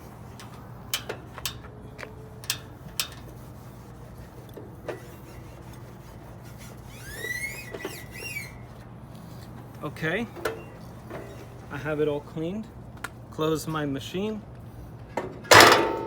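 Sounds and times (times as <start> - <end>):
short rising squeak: 6.5 - 8.8.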